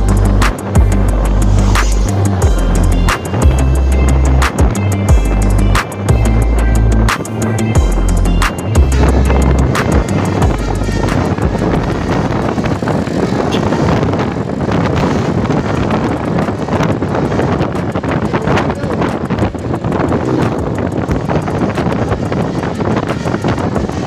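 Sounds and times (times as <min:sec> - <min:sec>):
road and vehicle noise: 0:00.0 - 0:24.0
wind buffeting microphone: 0:00.0 - 0:24.0.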